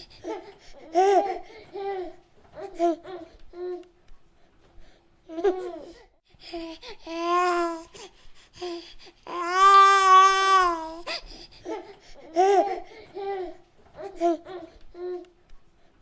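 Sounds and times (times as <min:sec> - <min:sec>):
baby cooing and babbling: 0:06.6 - 0:08.0, 0:08.6 - 0:15.3.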